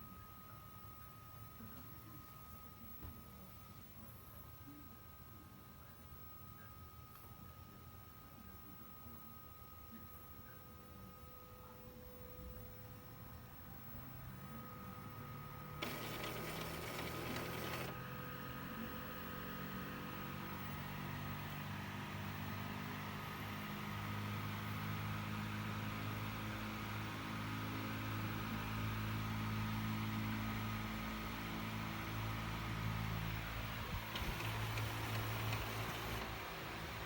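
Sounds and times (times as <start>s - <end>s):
printer motors humming: 15.8s - 18.1s, 31.2s - 37.0s.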